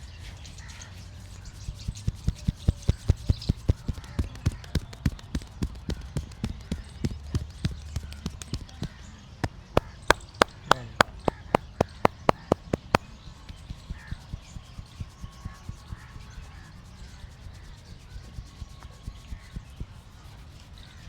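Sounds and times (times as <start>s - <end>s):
hands striking head in massage: 1.9s - 13.1s.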